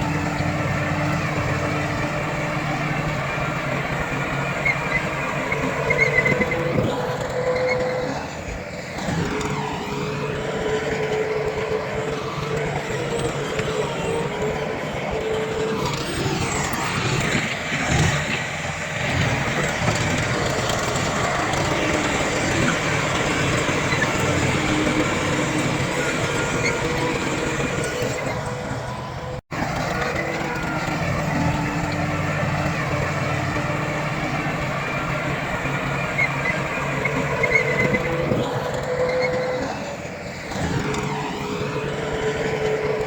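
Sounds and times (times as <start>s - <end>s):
heavy machinery diesel engines: 0.0s - 43.0s.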